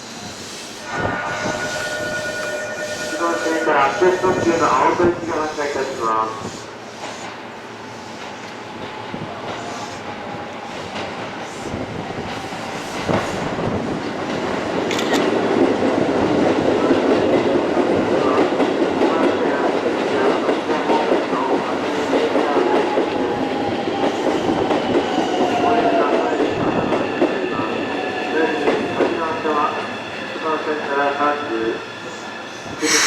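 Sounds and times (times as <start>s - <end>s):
electric train running: 0.5s - 7.1s.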